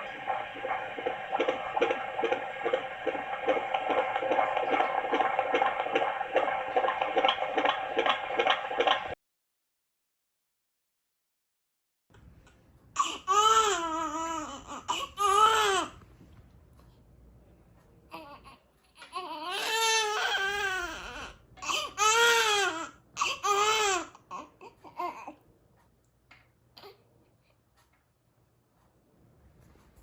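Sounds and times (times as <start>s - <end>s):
baby crying: 13.0s - 16.0s, 18.1s - 25.4s.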